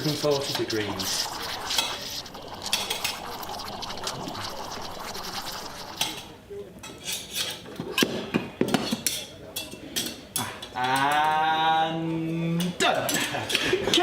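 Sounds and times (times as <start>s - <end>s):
drawn-out voice: 0.0s - 6.3s.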